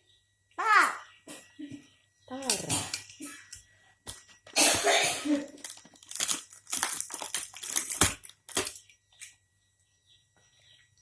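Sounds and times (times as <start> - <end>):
packaging crinkling and rustling: 5.4 - 9.0.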